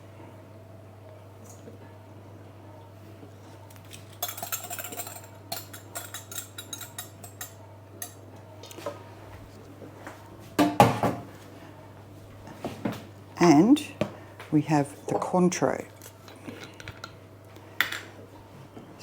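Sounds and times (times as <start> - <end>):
dishes and utensils clinking: 3.8 - 8.9.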